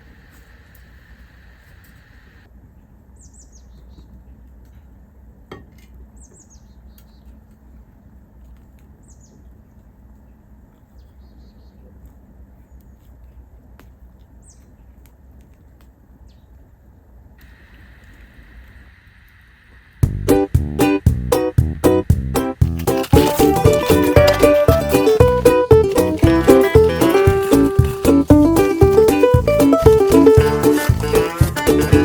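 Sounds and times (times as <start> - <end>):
low outdoor rumble: 7.3 - 32.0.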